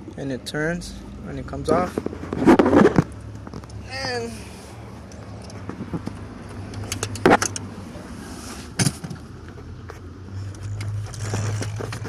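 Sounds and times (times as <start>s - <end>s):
parts clicking and rattling: 5.0s - 7.7s, 8.8s - 12.0s.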